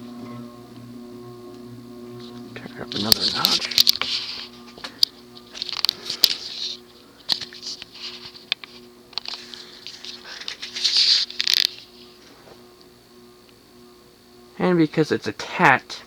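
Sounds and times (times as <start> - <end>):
ceiling fan motor humming: 0.0 - 16.0
rustling and clicking: 2.2 - 12.6.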